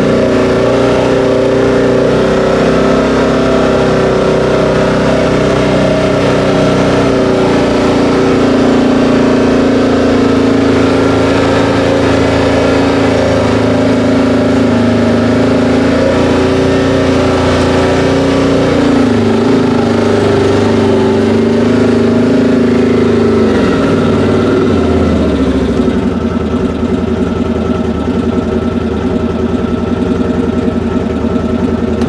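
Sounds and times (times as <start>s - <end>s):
vehicle engine running: 0.0s - 32.0s.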